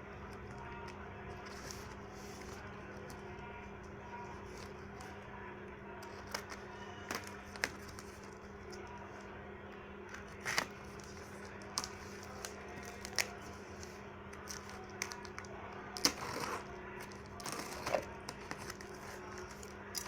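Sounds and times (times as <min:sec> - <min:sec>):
packaging clicks and taps: 0:06.0 - 0:08.8, 0:10.1 - 0:20.0
packaging crinkling: 0:10.2 - 0:20.0.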